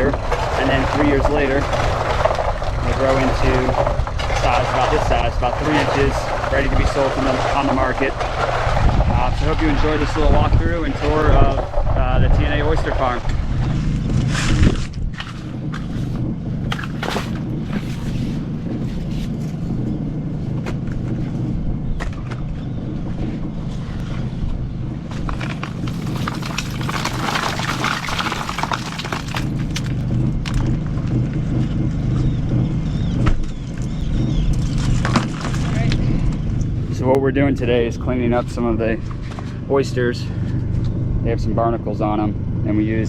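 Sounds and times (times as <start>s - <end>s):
oysters clattering in drum: 0.0s - 16.0s, 16.6s - 18.1s, 25.2s - 31.3s, 34.3s - 36.6s
cement mixer humming: 0.0s - 43.0s.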